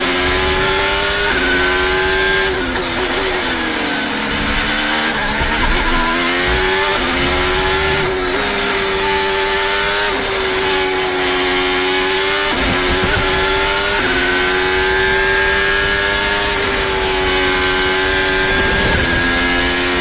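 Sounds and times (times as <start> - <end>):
racing car engine revving: 0.0 - 20.0.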